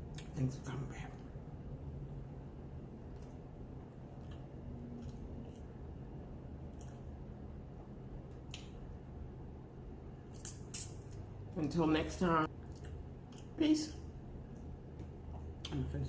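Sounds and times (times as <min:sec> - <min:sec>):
low room hum: 0:00.0 - 0:16.0
wet chewing: 0:03.1 - 0:05.8, 0:06.6 - 0:07.2, 0:12.5 - 0:13.6
lip smacks: 0:06.7 - 0:07.1, 0:08.3 - 0:08.8.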